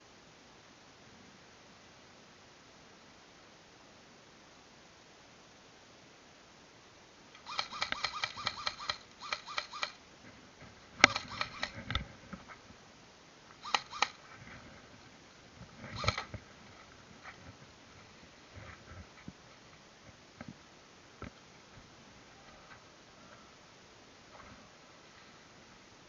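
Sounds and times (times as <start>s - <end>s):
airsoft gunshots: 7.4s - 10.0s, 11.0s - 11.8s, 13.6s - 14.2s, 16.0s - 16.3s.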